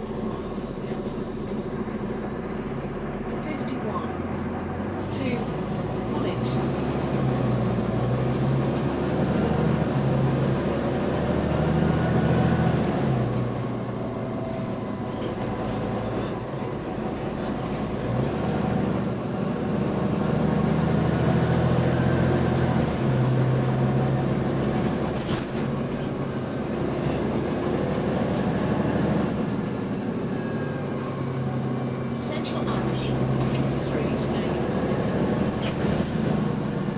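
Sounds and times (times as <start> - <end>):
bus engine drone: 0.0 - 36.9.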